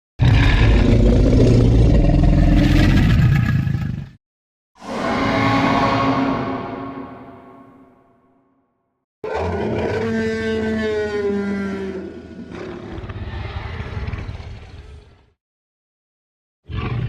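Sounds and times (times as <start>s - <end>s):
dinosaur roar: 0.2s - 4.1s, 4.8s - 7.5s, 9.2s - 15.2s.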